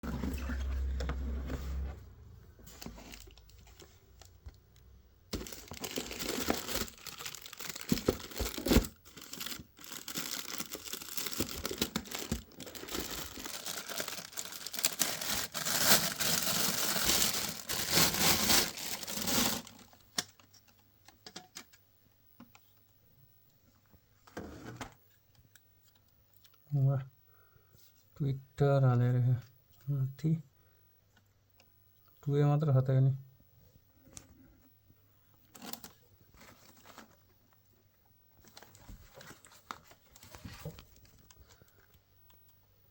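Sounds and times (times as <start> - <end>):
packaging tearing and crinkling: 5.3 - 20.5.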